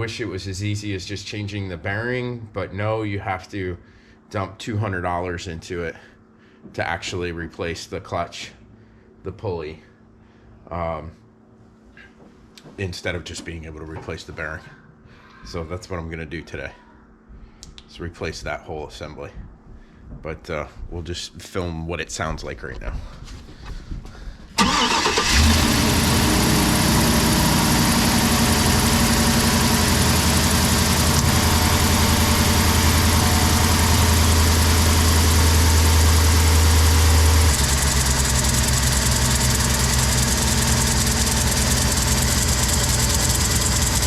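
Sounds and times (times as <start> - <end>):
engine starting and idling: 24.6 - 44.0.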